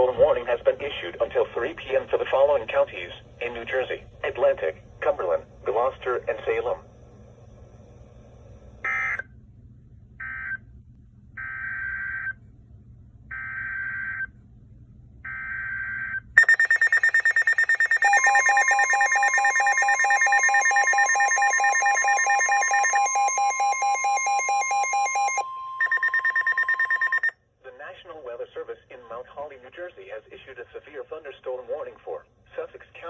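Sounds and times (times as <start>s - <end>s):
steady warning tone: 0.0s - 9.2s, 16.4s - 27.3s
rapidly pulsing electronic alarm: 8.8s - 9.2s, 13.3s - 14.3s, 15.3s - 27.3s.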